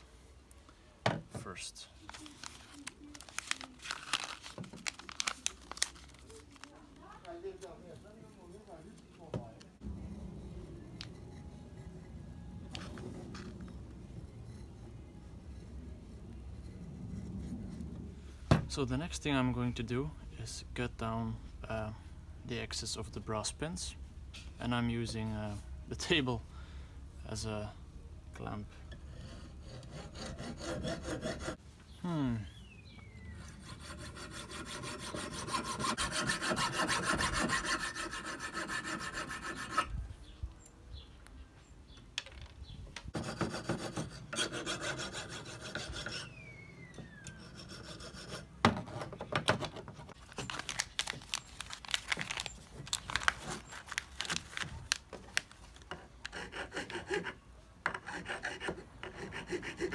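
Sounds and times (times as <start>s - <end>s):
saw rasping on metal: 28.9s - 31.6s, 33.4s - 39.9s, 43.2s - 46.5s, 47.1s - 48.6s, 56.3s - 59.9s
falling whistle-like glide: 46.1s - 47.5s.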